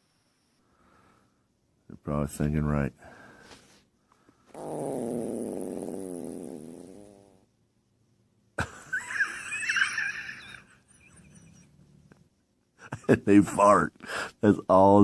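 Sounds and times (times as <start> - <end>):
animal farting: 4.5 - 7.4.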